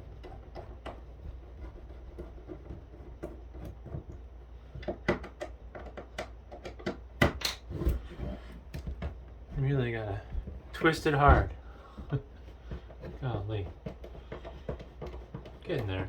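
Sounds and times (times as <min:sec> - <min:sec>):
screwdriver scraping: 0:12.4 - 0:16.0.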